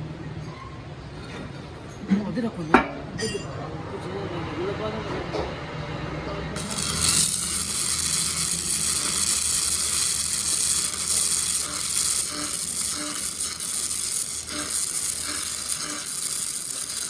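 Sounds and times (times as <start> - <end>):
arc welding crackling hiss: 6.6 - 17.0.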